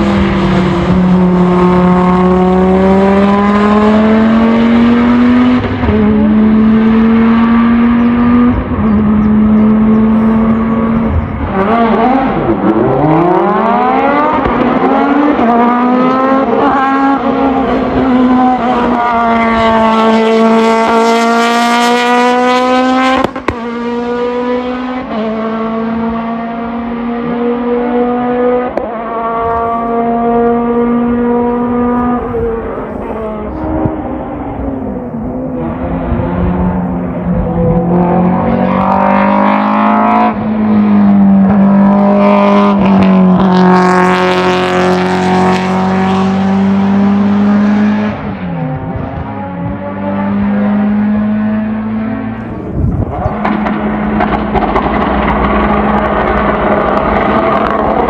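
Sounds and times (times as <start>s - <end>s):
race car engine revving: 0.0s - 58.0s.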